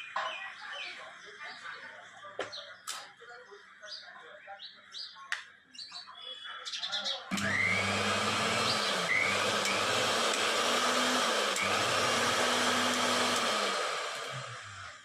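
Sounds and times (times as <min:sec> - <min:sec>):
mixer grinder motor whining: 0:07.3 - 0:15.0.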